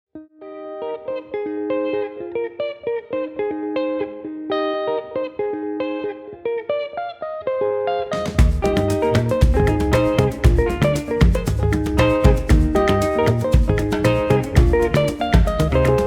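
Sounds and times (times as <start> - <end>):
picked guitar melody: 0.1 - 16.0
drums: 8.1 - 16.0
bass: 8.4 - 16.0.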